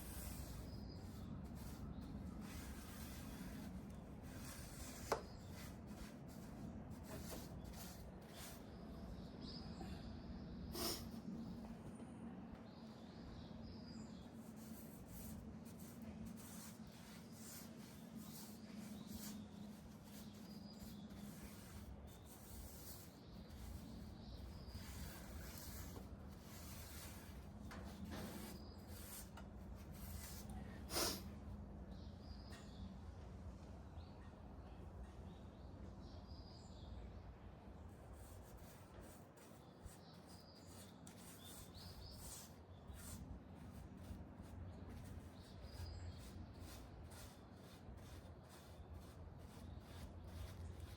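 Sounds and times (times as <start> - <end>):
rubbing and scraping on wood: 0.0 - 8.6, 14.6 - 31.2, 38.5 - 50.9.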